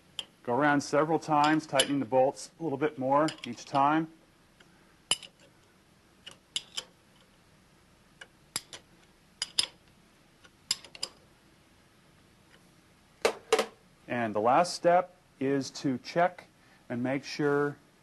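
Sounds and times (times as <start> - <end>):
wrench clinking on metal bolts: 1.4 - 2.0, 3.2 - 4.0, 5.1 - 5.5, 6.2 - 6.9, 8.5 - 9.8, 10.7 - 11.2.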